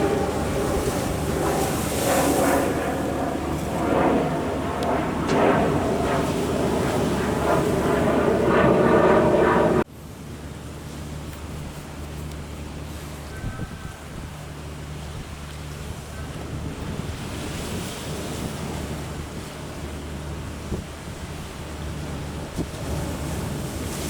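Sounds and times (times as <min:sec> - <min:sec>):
rough waves rushing: 0:00.0 - 0:09.8
steady low hum: 0:00.0 - 0:09.9
wind buffeting microphone: 0:00.0 - 0:09.9.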